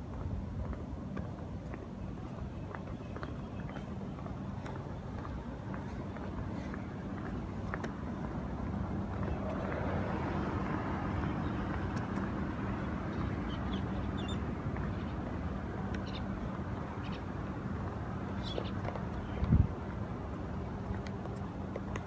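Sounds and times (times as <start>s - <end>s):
traffic passing: 0.0s - 22.0s
engine humming: 4.0s - 22.0s.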